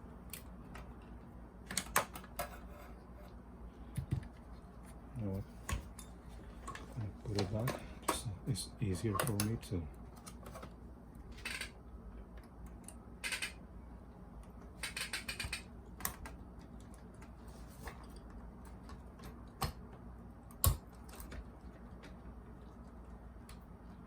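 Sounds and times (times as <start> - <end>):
small parts clicking and tapping: 9.1 - 10.7, 11.3 - 13.6, 14.4 - 22.2.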